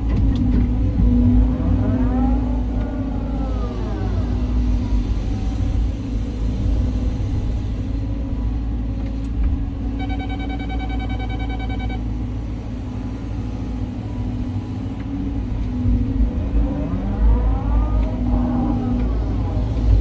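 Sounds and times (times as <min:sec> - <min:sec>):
excavator diesel engine rumbling: 0:00.0 - 0:20.0
rapid electronic beeping: 0:10.0 - 0:12.1.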